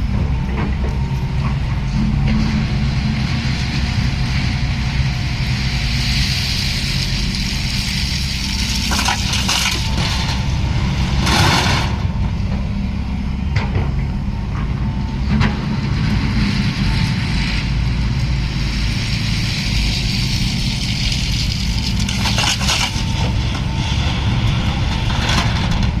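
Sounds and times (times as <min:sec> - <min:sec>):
excavator diesel engine running: 0:00.0 - 0:26.0
sharp clanks and crunching cracks: 0:08.8 - 0:10.4, 0:21.1 - 0:23.3.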